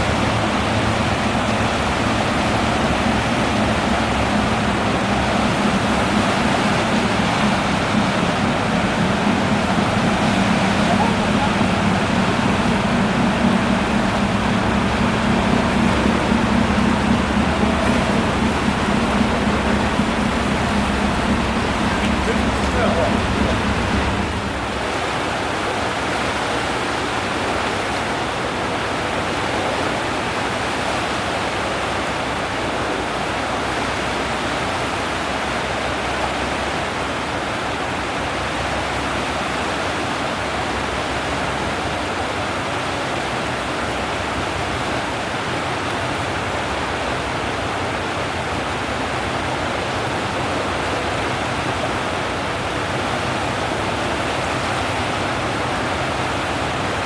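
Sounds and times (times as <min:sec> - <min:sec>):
steady rushing noise: 0:00.0 - 0:25.5.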